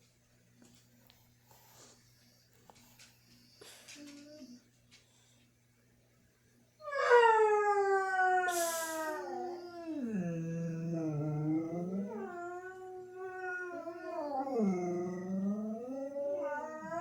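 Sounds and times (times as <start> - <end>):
dogs howling: 6.8 - 17.0.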